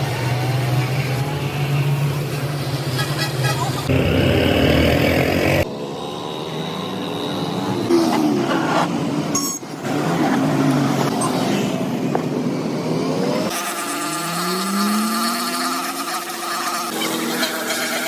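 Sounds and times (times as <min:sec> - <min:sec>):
motor running with sliding pitch: 0:13.5 - 0:18.0.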